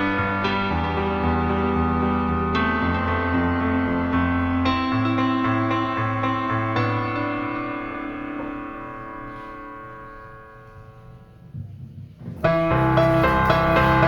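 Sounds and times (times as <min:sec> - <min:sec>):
piano music: 0:00.0 - 0:14.0.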